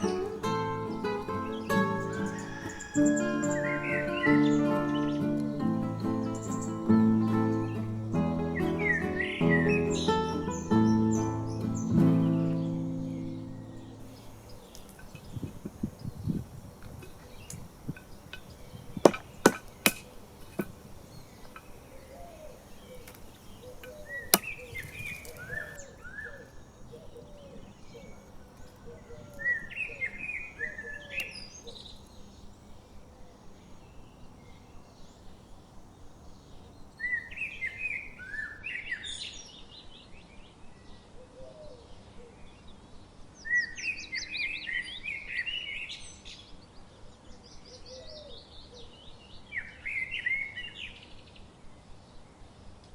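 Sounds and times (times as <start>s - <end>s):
songbirds singing: 0.0s - 39.4s
sharp knocks: 19.0s - 20.8s.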